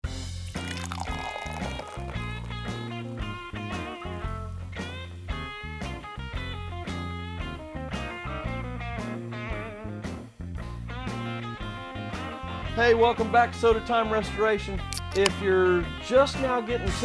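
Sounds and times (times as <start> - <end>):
instrumental rock music: 0.0 - 13.0.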